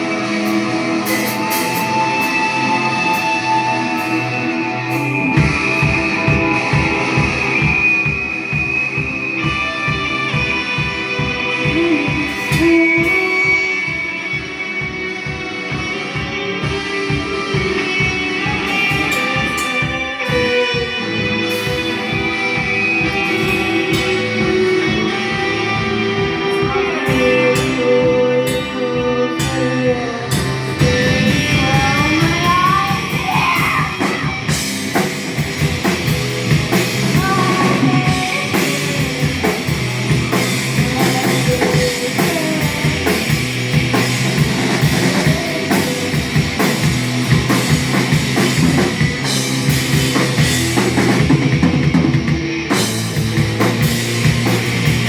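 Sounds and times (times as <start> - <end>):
rock music with singing: 0.0 - 55.0.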